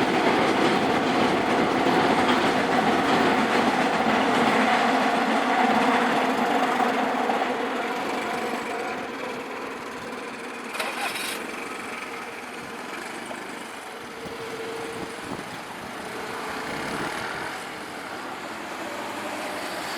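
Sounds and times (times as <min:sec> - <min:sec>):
passing train: 0:00.0 - 0:19.9
vehicle engines running: 0:06.1 - 0:19.9.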